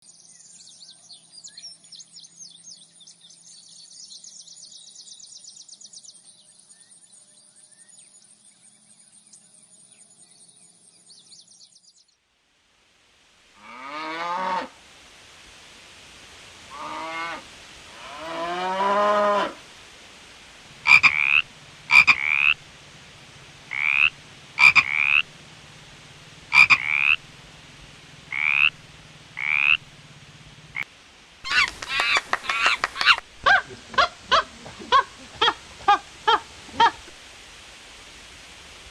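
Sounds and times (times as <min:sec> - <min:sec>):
rising animal calls: 0:16.7 - 0:19.7, 0:20.8 - 0:22.6, 0:23.4 - 0:30.8, 0:31.5 - 0:37.2
frog croaking: 0:20.8 - 0:22.6, 0:23.6 - 0:25.3, 0:26.4 - 0:27.3, 0:28.2 - 0:30.8
high fast animal chirping: 0:20.9 - 0:22.6, 0:23.7 - 0:25.2, 0:26.5 - 0:27.2, 0:28.3 - 0:28.7, 0:31.5 - 0:35.6.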